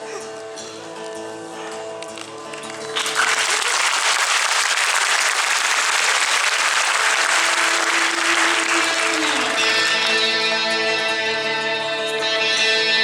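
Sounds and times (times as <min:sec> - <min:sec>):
audience applauding: 0:02.6 - 0:10.5.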